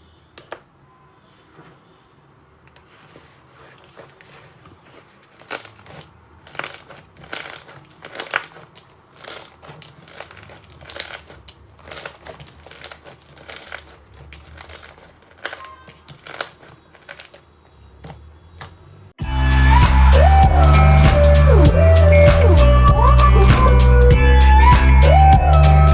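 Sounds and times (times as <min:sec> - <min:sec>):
loud music: 0:19.2 - 0:25.9.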